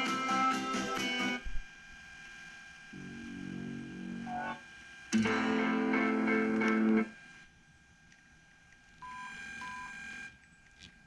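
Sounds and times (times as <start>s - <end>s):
music through speaker: 0.0s - 1.4s.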